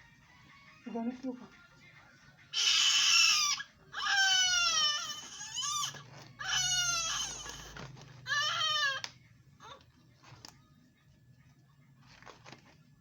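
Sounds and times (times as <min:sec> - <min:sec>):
newborn baby crying: 0:02.6 - 0:09.8.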